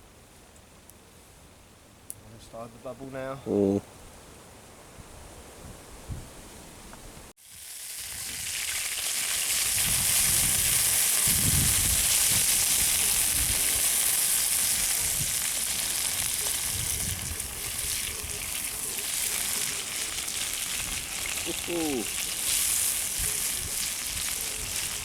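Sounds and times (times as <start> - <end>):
meat sizzling in a frying pan: 7.4 - 25.0.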